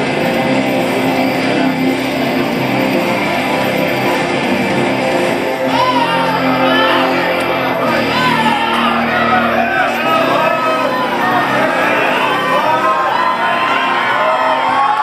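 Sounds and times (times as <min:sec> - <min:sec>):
loud guitar music: 0:00.0 - 0:15.0
voices shouting: 0:05.4 - 0:15.0.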